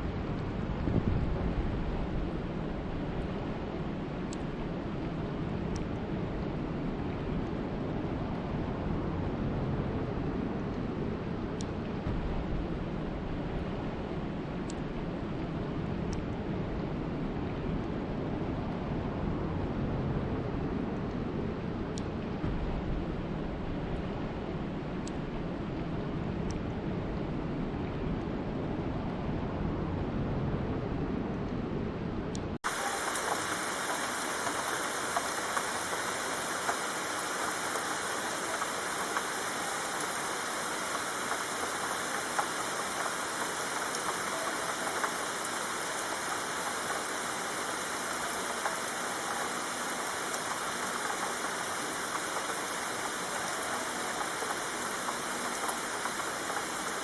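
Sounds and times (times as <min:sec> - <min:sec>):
low rumbling noise: 0:12.0 - 0:36.6
raindrop ticks: 0:32.3 - 0:57.0
rain hissing: 0:32.6 - 0:57.0.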